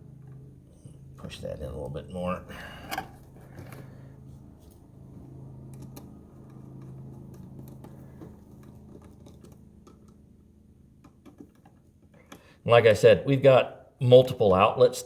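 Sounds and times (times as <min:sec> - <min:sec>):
steady low hum: 0:00.0 - 0:14.5
light clicks and taps on wires: 0:05.6 - 0:10.2.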